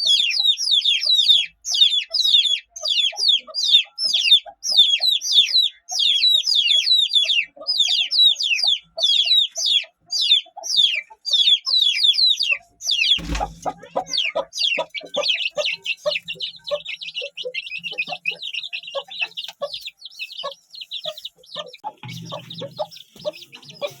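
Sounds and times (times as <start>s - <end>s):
chicks peeping: 0.0s - 24.0s
low thump: 13.2s - 14.0s.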